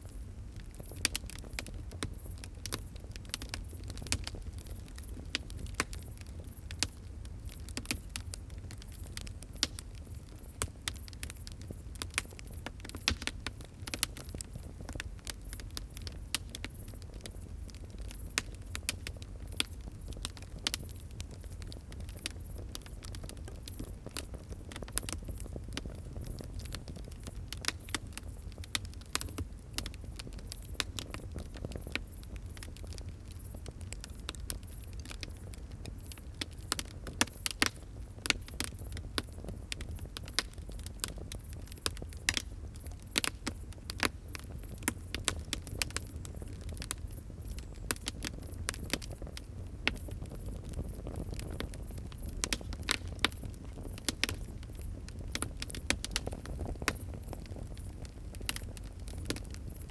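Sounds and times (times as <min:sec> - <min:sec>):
fire crackling and popping: 0:00.0 - 0:59.9
low rumble of burning: 0:00.0 - 0:59.9.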